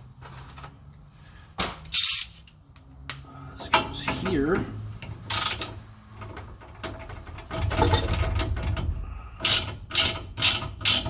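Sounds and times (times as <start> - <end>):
metal parts handling noise: 7.5 - 8.8
ratchet pawl clicking: 9.4 - 11.0.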